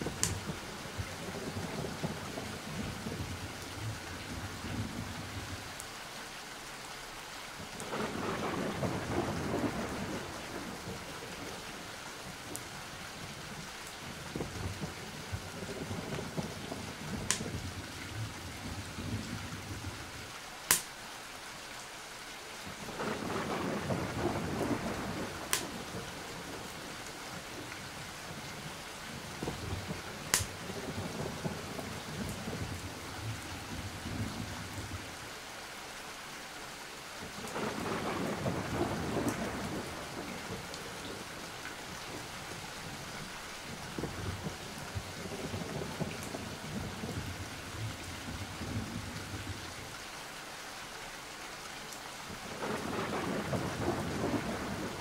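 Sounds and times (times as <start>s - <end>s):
rolling thunder: 0.0s - 5.6s, 7.8s - 11.9s, 14.1s - 20.1s, 22.8s - 35.1s, 37.4s - 41.5s, 42.1s - 49.7s, 52.3s - 55.0s
steady rain: 0.0s - 55.0s.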